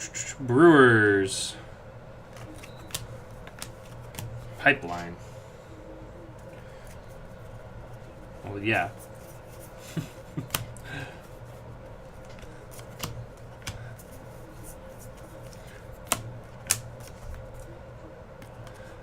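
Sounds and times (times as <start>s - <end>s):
steady low hum: 0.0s - 19.0s
trading cards flipped through: 2.3s - 4.5s, 12.1s - 17.7s
card snaps: 15.5s - 17.7s.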